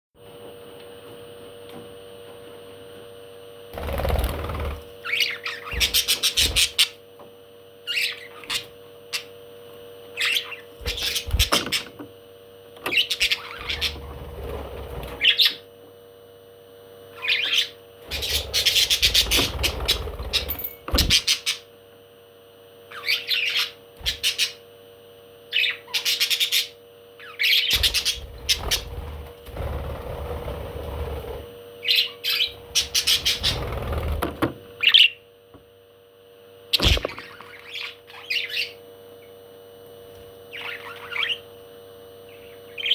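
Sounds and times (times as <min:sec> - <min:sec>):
faint steady hum: 0:00.2 - 0:42.9
parrot chirps and squawks: 0:07.9 - 0:09.3, 0:10.2 - 0:11.8, 0:12.9 - 0:14.0, 0:17.1 - 0:19.3, 0:22.9 - 0:24.6, 0:25.5 - 0:28.8, 0:36.8 - 0:38.8, 0:40.5 - 0:41.5.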